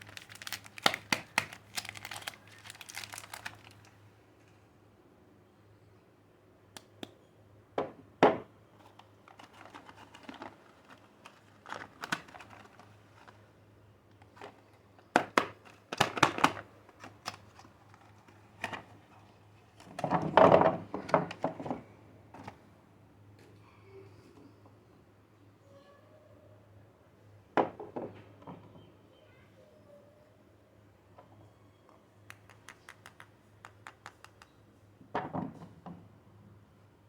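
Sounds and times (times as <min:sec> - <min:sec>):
crinkling and tearing packaging: 0:00.0 - 0:04.0, 0:09.0 - 0:13.5
sharp clicks and taps: 0:32.3 - 0:34.6.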